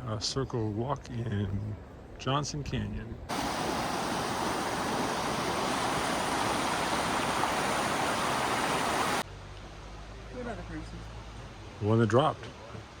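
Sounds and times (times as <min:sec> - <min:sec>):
stream water rushing: 0:03.3 - 0:09.2.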